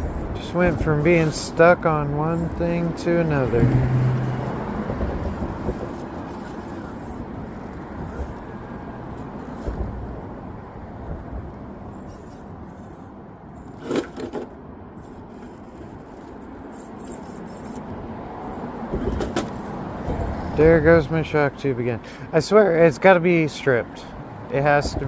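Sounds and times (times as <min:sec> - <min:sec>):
rc car drivetrain rumble: 0:13.6 - 0:17.9.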